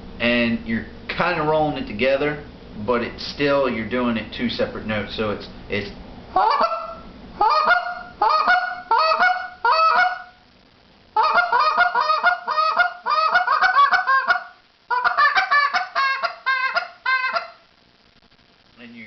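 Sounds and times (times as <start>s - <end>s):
goose call moaning and clucking: 6.4s - 10.3s, 11.2s - 17.6s.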